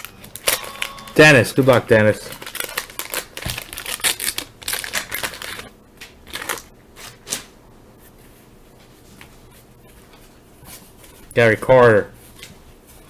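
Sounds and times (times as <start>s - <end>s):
cards clicking and rustling: 0.0s - 7.5s
waxed paper wrapper tearing: 0.3s - 7.5s.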